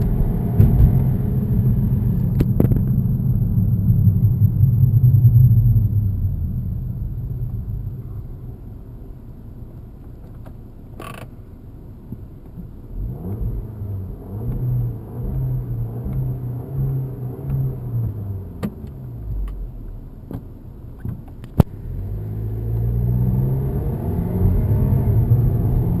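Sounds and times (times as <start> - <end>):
car engine revving: 0.0 - 8.9, 12.9 - 19.8, 21.6 - 26.0.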